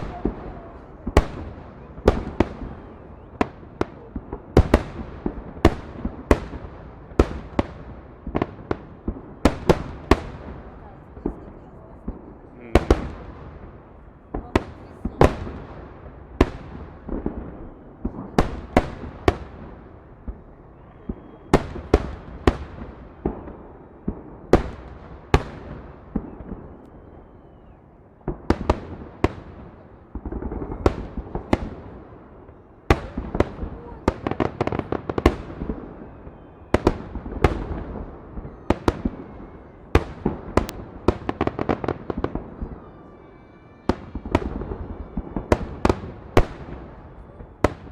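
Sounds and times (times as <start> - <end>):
fireworks bangs: 0.0 - 47.9.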